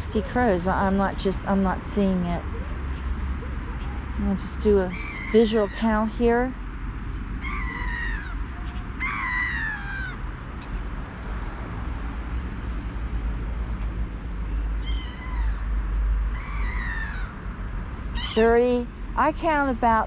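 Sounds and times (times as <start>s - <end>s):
gulls calling: 0.0s - 6.6s, 7.4s - 10.2s, 14.5s - 18.9s
steady low rumble: 0.0s - 20.0s.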